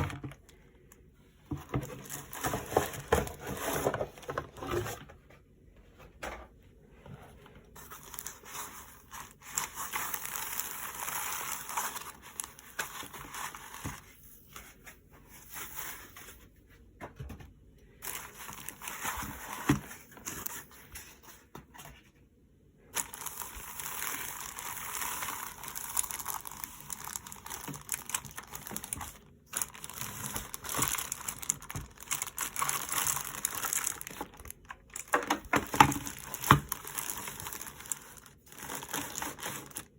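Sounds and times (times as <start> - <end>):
plastic packaging crinkling: 1.6 - 4.4, 7.8 - 14.2, 18.0 - 21.0, 22.9 - 39.9.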